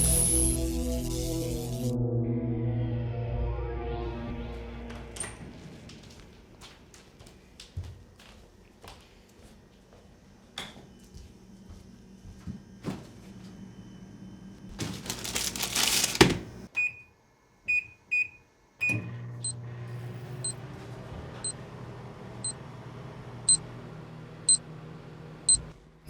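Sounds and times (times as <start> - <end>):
microwave oven humming: 0.0 - 1.9, 9.7 - 26.0
keypad beeps: 16.8 - 17.1.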